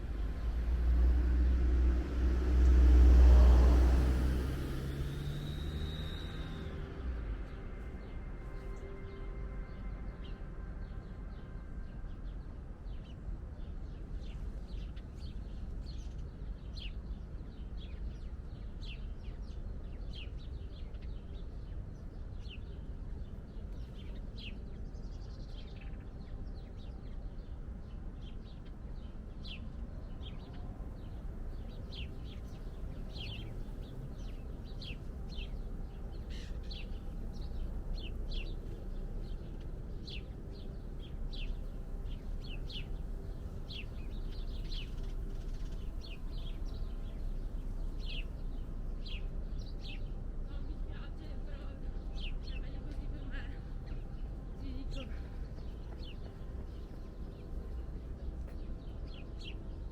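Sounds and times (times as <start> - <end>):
steady low rumble: 0.0 - 59.9
small birds chirping: 14.2 - 59.9.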